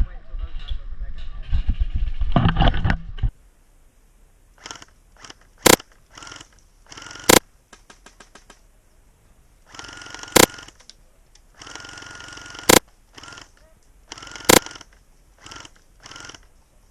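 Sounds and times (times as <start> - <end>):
rattle of rapid shots: 4.6 - 8.6, 9.8 - 10.8, 11.6 - 16.4.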